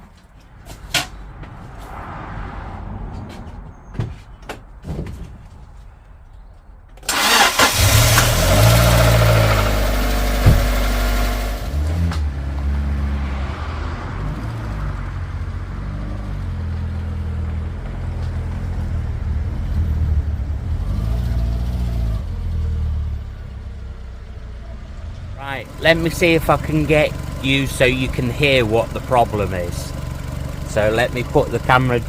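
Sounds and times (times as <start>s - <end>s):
car engine starting and idling: 6.9s - 32.0s.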